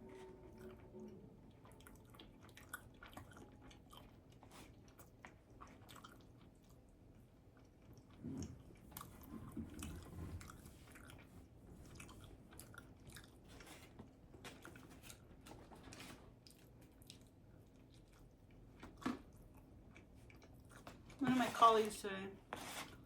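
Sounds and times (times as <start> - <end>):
chewing sandwich: 0.0 - 21.2.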